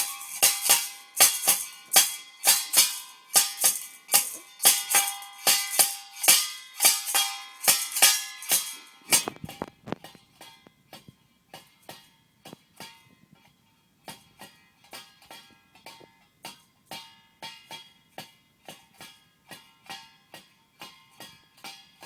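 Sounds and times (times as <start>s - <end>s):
jingling rattle shaken: 0.0s - 9.6s.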